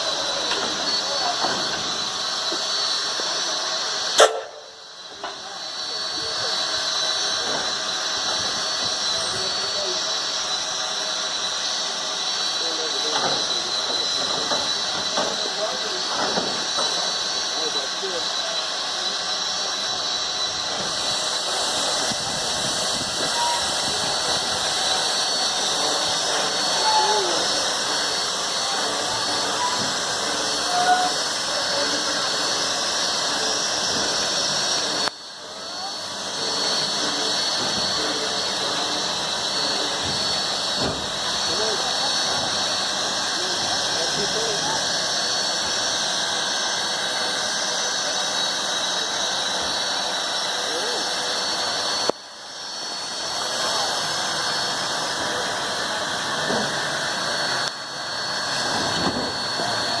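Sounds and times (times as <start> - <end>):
steam locomotive hissing: 0.0 - 60.0
high whistling tone: 0.1 - 6.5, 8.8 - 16.1, 16.8 - 40.6.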